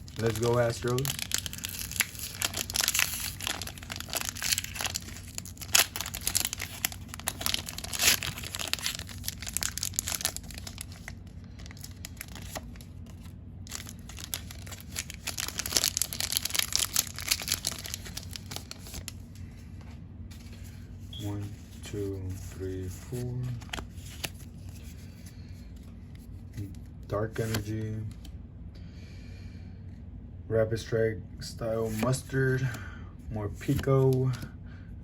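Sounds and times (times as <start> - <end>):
foil wrapper crinkling and tearing: 0.0 - 19.2.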